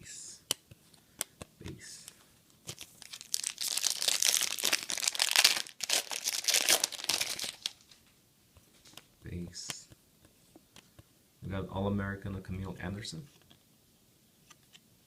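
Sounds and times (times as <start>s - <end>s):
card pack wrapper tearing and crinkling: 2.6s - 7.8s.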